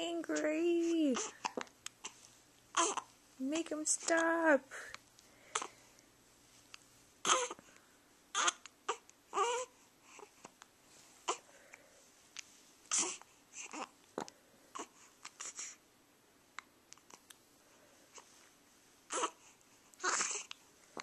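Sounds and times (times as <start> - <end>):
baby fussing and crying: 0.0 - 3.2, 3.9 - 5.9, 7.2 - 7.7, 8.3 - 10.5, 11.2 - 11.5, 12.9 - 15.8, 19.1 - 21.0
baby hiccups: 1.2 - 3.1, 7.2 - 7.6, 8.3 - 9.7, 12.9 - 13.9, 19.1 - 19.4, 20.0 - 20.5.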